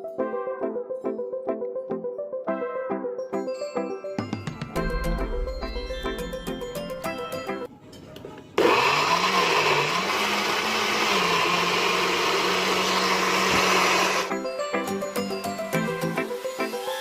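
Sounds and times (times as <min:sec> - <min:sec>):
blender motor humming: 0:08.6 - 0:14.3, 0:15.3 - 0:17.0.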